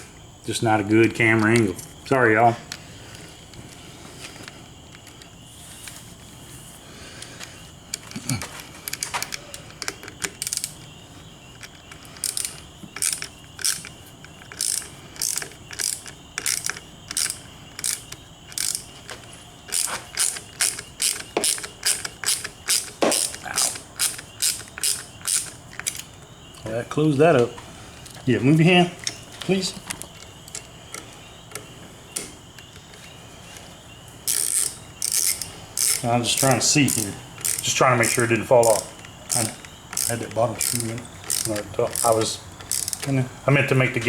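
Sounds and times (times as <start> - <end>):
hand ratchet clicking: 8.9 - 10.8, 11.6 - 26.1, 34.3 - 43.2.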